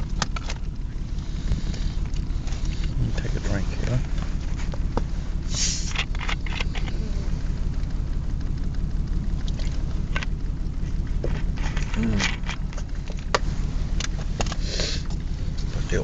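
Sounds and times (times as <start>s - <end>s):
car engine and tyres droning: 0.0s - 16.0s.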